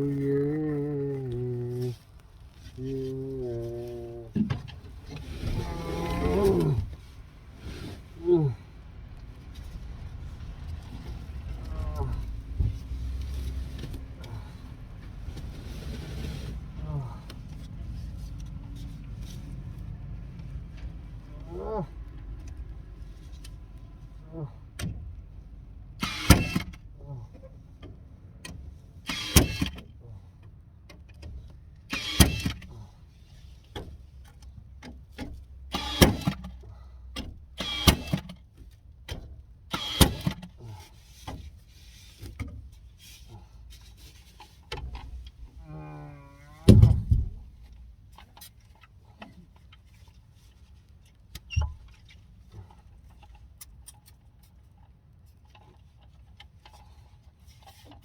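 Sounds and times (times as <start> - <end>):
low steady rumble: 0.0 - 26.1.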